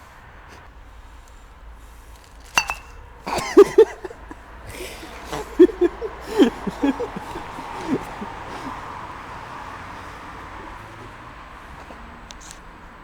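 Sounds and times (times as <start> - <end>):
glass clink: 2.5 - 6.1.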